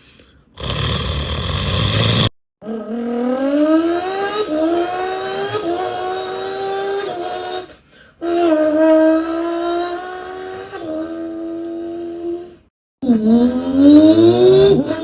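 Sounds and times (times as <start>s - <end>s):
person imitating car engine: 0.6s - 7.6s, 8.2s - 15.0s.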